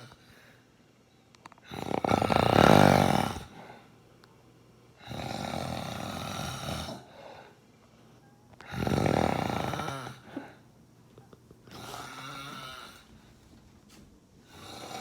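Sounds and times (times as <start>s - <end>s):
man snoring: 1.7s - 3.5s, 5.0s - 7.1s, 8.7s - 10.4s, 11.7s - 13.0s, 14.5s - 15.0s.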